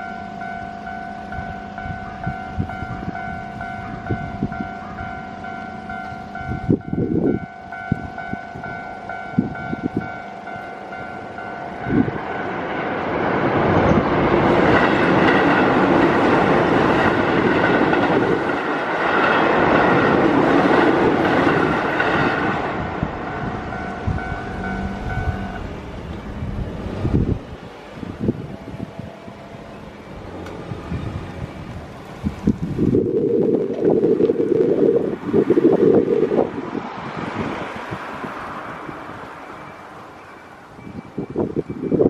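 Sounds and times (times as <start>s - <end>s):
level-crossing alarm ringing: 0.0s - 12.7s, 21.2s - 25.7s, 39.2s - 42.0s
train rumble and wheel clatter: 0.0s - 42.0s.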